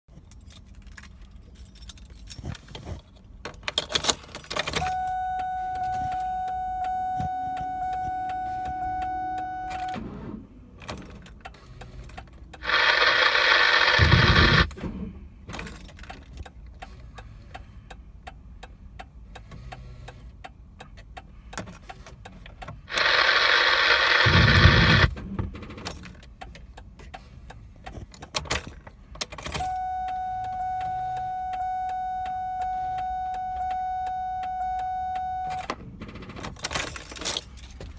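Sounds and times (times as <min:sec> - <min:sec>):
keys jingling: 0:00.1 - 0:05.0, 0:36.5 - 0:37.9
steady warning tone: 0:04.8 - 0:10.0, 0:12.6 - 0:14.7, 0:22.9 - 0:25.2, 0:29.5 - 0:35.7
starter cranking engine: 0:12.6 - 0:14.8, 0:22.9 - 0:26.1.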